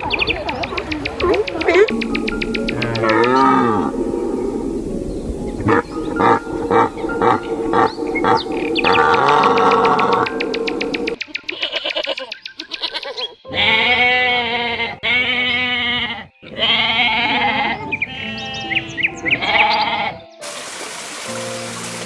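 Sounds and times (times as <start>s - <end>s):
steady hiss: 0.0s - 11.2s, 20.4s - 22.0s
sheep bleating: 13.5s - 18.7s, 19.4s - 20.2s.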